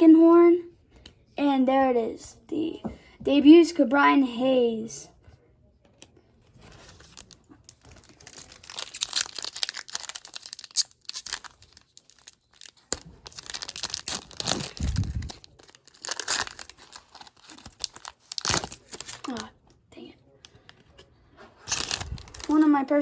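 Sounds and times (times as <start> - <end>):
foil wrapper crinkling and tearing: 6.6 - 19.5, 21.6 - 22.6.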